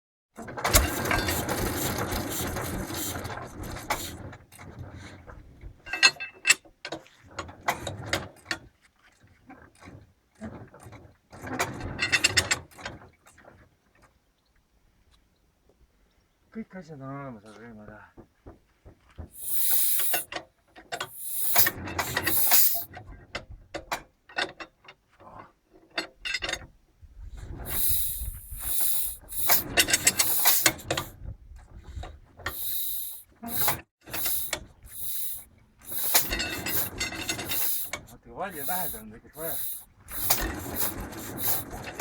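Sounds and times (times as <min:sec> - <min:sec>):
mechanical clicks and clatter: 0:00.4 - 0:04.2, 0:19.4 - 0:20.3, 0:21.0 - 0:22.9, 0:27.7 - 0:31.2, 0:32.5 - 0:42.0
diesel engine cranking: 0:00.4 - 0:05.1, 0:19.3 - 0:23.0, 0:27.5 - 0:31.2, 0:31.8 - 0:42.0
hissing bursts: 0:19.4 - 0:20.3, 0:21.0 - 0:22.9, 0:27.7 - 0:31.1, 0:32.5 - 0:42.0.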